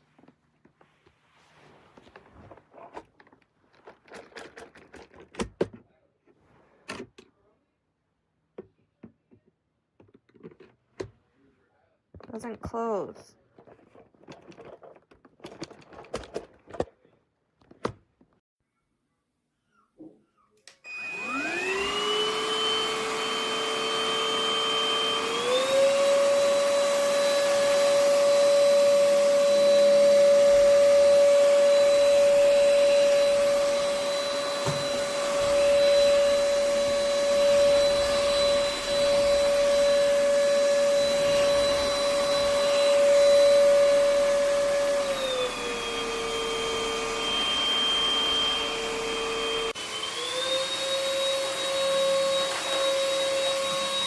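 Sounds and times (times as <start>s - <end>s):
stick vacuum motor whine: 20.8s - 54.0s.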